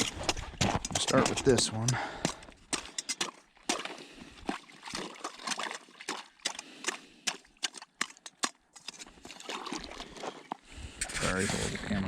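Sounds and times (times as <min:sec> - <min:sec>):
sharp knocks and crunches: 0:00.0 - 0:09.6
slushy splashing: 0:00.0 - 0:11.2.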